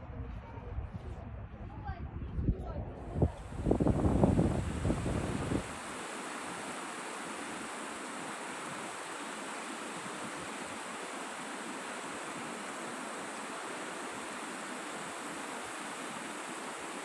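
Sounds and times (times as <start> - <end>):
wind rumble on microphone: 0.0 - 6.7
rush of flowing water: 3.4 - 17.0.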